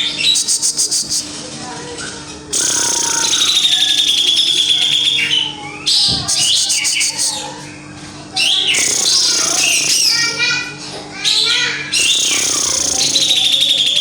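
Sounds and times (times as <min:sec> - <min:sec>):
bird chattering trills: 0:00.0 - 0:01.4, 0:02.5 - 0:07.6, 0:08.4 - 0:10.5, 0:11.2 - 0:14.0.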